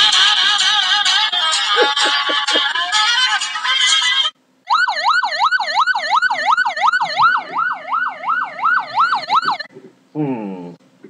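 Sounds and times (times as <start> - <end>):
yelp siren: 4.7 - 9.7.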